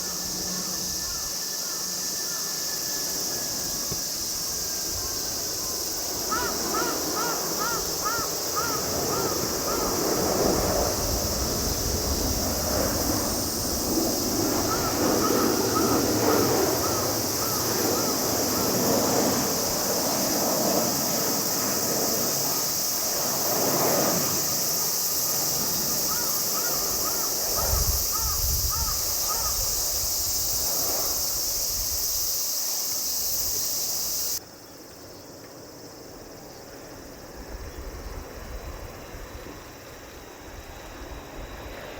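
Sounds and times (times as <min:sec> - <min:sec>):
insect drone: 0:00.0 - 0:41.9
bird calling: 0:05.0 - 0:10.1, 0:14.5 - 0:18.8, 0:26.0 - 0:29.7.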